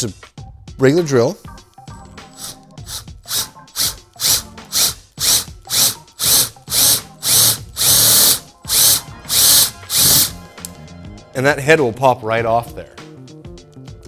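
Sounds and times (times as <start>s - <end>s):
electric drill bursts: 2.3s - 10.4s.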